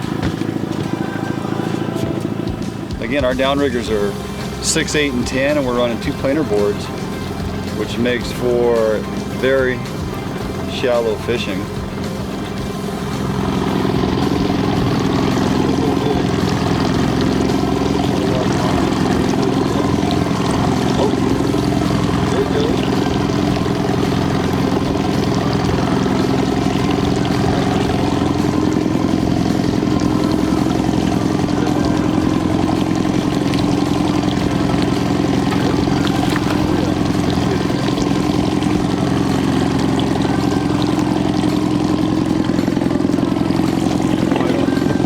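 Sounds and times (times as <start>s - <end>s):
boat engine droning: 0.0s - 45.0s.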